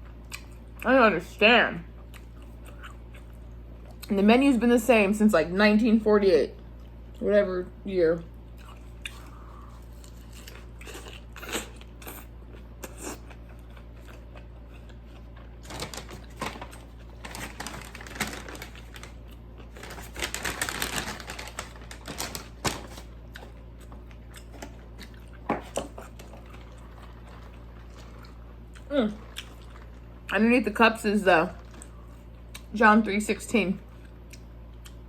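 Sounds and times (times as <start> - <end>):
close chewing and mouth clicks: 0.0 - 0.8, 2.0 - 4.1, 8.5 - 15.8, 23.2 - 30.2
steady low hum: 0.0 - 35.0.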